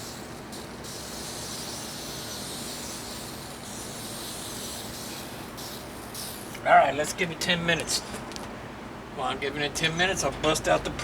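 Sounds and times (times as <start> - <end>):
aerosol can spraying: 0.0 - 6.6
low background hum: 0.0 - 11.0.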